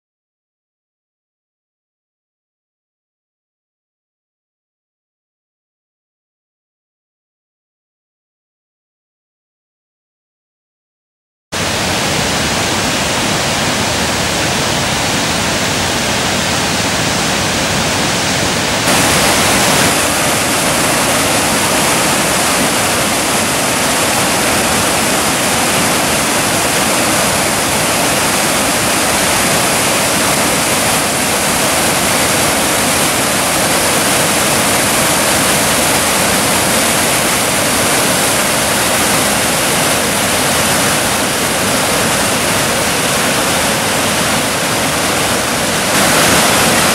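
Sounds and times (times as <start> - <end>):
waterfall roaring: 11.6 - 46.9.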